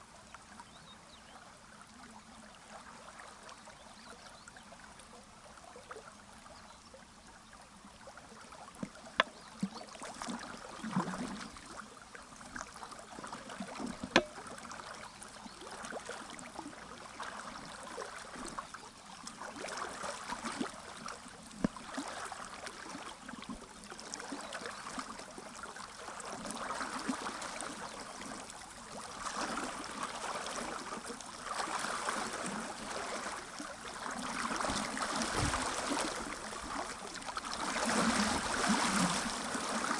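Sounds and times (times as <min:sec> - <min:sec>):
river water rushing and splashing: 0:29.2 - 0:39.9.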